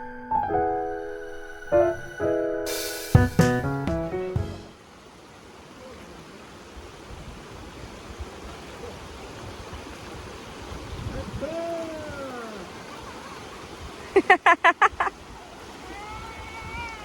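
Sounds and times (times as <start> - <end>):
stream water rushing: 4.1 - 17.0.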